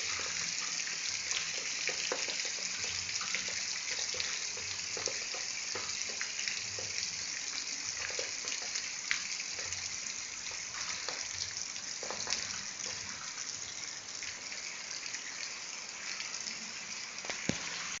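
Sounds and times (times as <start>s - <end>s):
drops ticking on surfaces: 1.6s - 7.0s
heavy rain: 5.8s - 18.0s.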